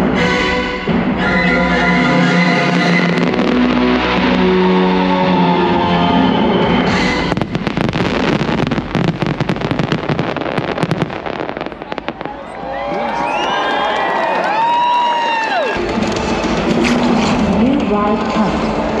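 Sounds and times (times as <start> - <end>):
firework bangs and crackles: 2.6 - 13.9, 15.8 - 19.0.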